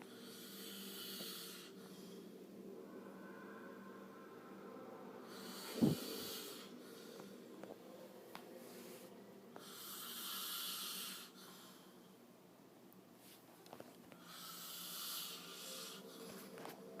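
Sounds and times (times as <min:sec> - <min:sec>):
man snoring: 0:00.2 - 0:01.8, 0:05.3 - 0:06.7, 0:09.6 - 0:11.4, 0:14.3 - 0:16.1.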